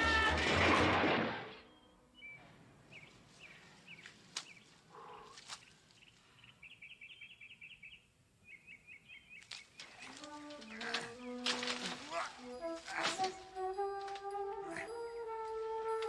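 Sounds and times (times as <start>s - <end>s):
birds chirping: 1.6s - 13.8s.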